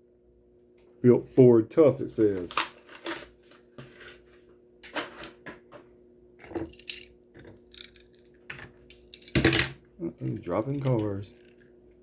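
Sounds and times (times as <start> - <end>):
faint steady hum: 0.0 - 12.0
toy cars clicking and knocking: 10.2 - 11.7.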